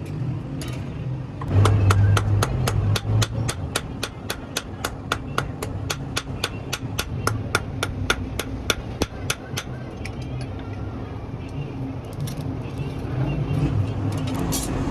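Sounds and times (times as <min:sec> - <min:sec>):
hammer striking steel on anvil: 0:01.5 - 0:10.0.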